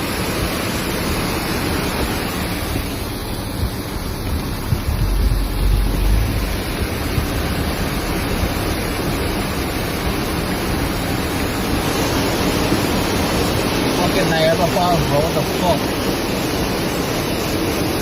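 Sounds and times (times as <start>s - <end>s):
heavy rain rushing: 0.0s - 18.0s
wind buffeting microphone: 2.5s - 14.2s.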